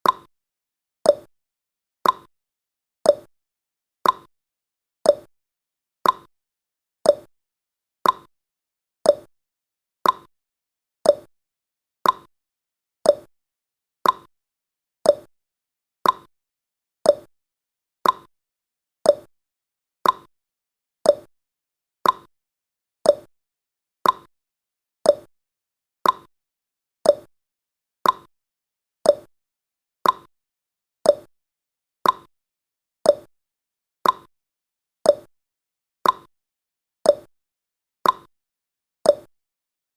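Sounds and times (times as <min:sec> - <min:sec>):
clock ticking high and low: 0:00.0 - 0:00.3, 0:02.0 - 0:02.3, 0:04.0 - 0:04.3, 0:05.1 - 0:05.3, 0:06.0 - 0:06.3, 0:07.1 - 0:07.3, 0:08.0 - 0:08.3, 0:09.1 - 0:09.3, 0:10.0 - 0:10.3, 0:11.1 - 0:11.3, 0:12.0 - 0:12.3, 0:13.1 - 0:13.3, 0:14.0 - 0:14.3, 0:15.1 - 0:15.3, 0:16.0 - 0:16.3, 0:17.1 - 0:17.3, 0:18.0 - 0:18.3, 0:19.1 - 0:19.3, 0:20.0 - 0:20.3, 0:21.1 - 0:21.3, 0:22.0 - 0:22.3, 0:23.0 - 0:23.3, 0:24.0 - 0:24.3, 0:25.0 - 0:25.3, 0:26.0 - 0:26.3, 0:27.0 - 0:27.3, 0:28.0 - 0:28.3, 0:29.1 - 0:29.3, 0:30.0 - 0:30.3, 0:31.1 - 0:31.3, 0:32.0 - 0:32.3, 0:33.1 - 0:33.3, 0:34.0 - 0:34.3, 0:35.1 - 0:35.3, 0:36.0 - 0:36.3, 0:37.1 - 0:37.3, 0:38.0 - 0:38.3, 0:39.1 - 0:39.3.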